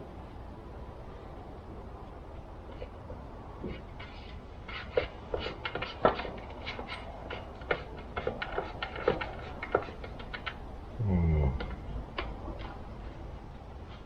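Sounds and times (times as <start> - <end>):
hand tools clicking and tapping: 4.8 - 10.6.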